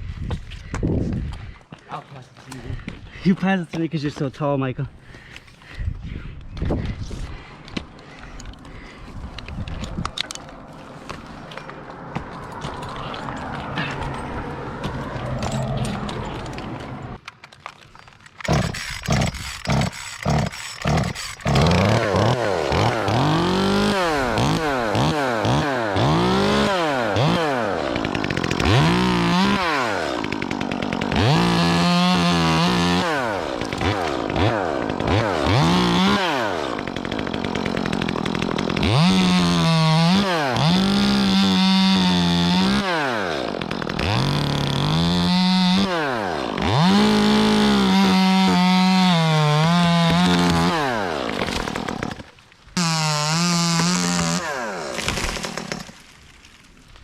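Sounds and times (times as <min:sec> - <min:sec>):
chainsaw revving: 0:18.4 - 0:56.0.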